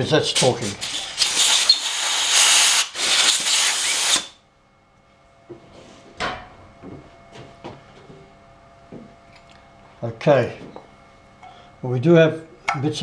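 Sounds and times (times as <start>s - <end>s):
power drill drilling metal: 0.4s - 4.3s.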